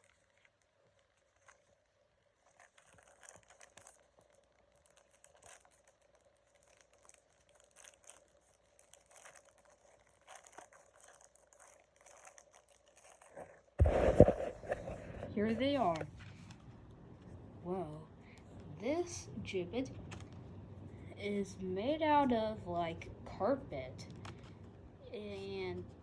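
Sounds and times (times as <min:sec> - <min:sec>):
packaging crinkling and rustling: 0:00.0 - 0:17.4.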